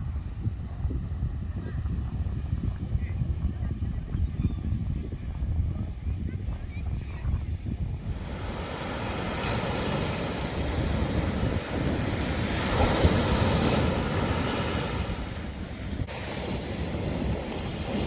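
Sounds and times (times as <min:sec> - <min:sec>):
wind rumbling on microphone: 0:00.0 - 0:18.0
sea waves washing onto beach: 0:08.0 - 0:18.0.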